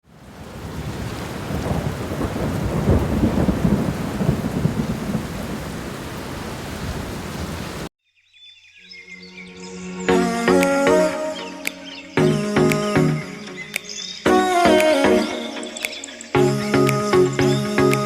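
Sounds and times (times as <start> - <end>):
heavy rain: 0.0 - 7.9
thunder rumble: 0.2 - 7.9.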